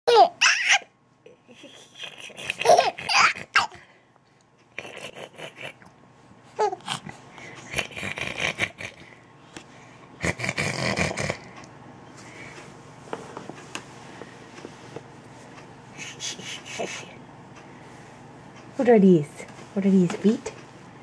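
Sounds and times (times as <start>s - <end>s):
baby laughing and babbling: 0.1s - 3.8s, 6.6s - 7.0s.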